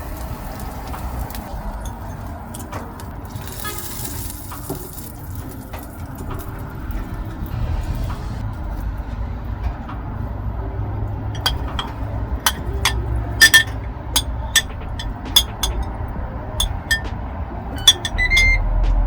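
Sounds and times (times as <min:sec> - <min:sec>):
kitchenware clinking: 0:11.4 - 0:16.0, 0:16.6 - 0:17.1, 0:17.8 - 0:18.6.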